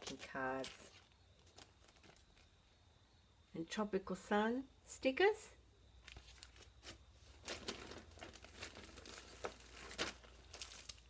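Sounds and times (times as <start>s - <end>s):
packaging crinkling: 0.0s - 2.5s, 6.1s - 11.0s.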